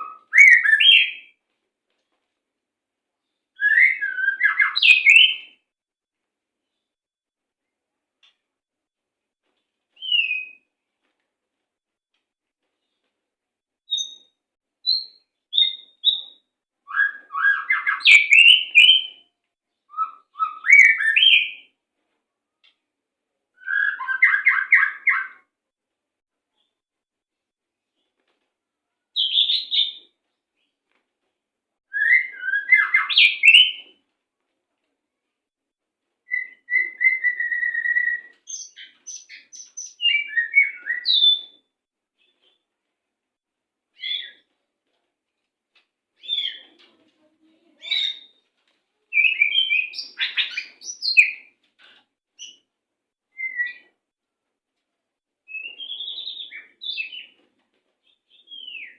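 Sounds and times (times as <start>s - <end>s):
songbird singing: 0.0s - 1.2s, 14.9s - 19.2s, 36.3s - 41.5s.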